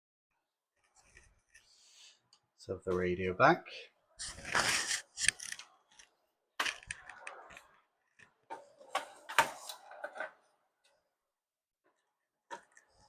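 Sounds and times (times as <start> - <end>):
radio case clicks and scraping: 4.4 - 10.4.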